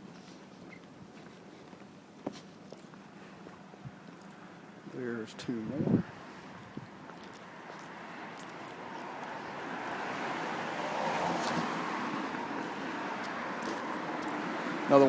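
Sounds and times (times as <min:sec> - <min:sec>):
street traffic noise: 0:00.0 - 0:15.0
vehicle approaching: 0:05.7 - 0:15.0.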